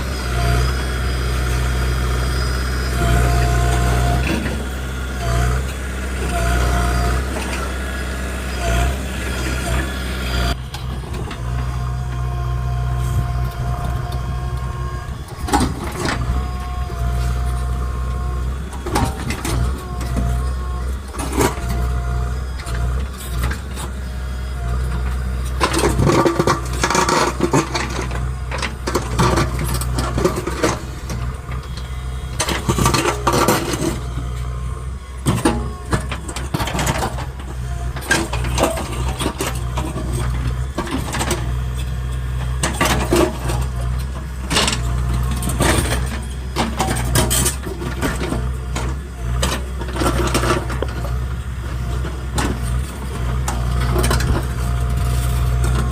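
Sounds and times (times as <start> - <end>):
diesel engine running: 0.0 - 55.9.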